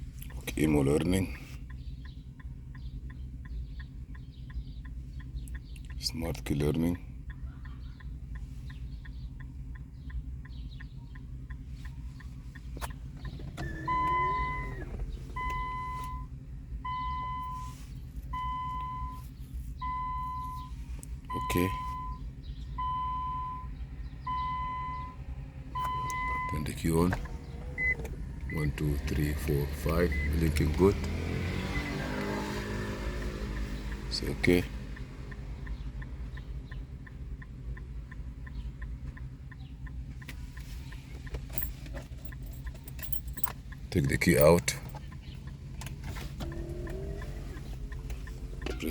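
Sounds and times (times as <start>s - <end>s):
rapid even ticking: 33.2s - 48.9s.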